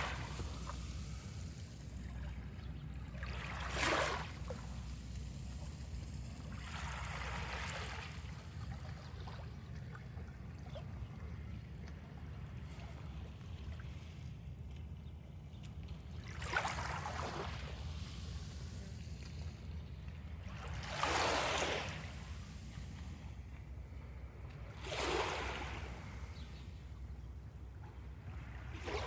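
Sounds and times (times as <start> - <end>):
waves lapping on sand: 0.0 - 9.3, 16.2 - 27.1, 28.0 - 29.0.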